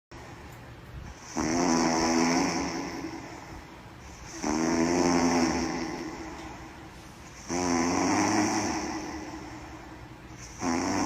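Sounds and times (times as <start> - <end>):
loud snoring: 1.2 - 11.0.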